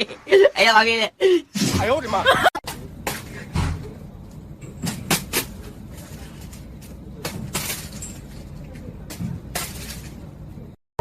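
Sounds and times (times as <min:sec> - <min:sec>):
steady background rumble: 0:00.0 - 0:10.8.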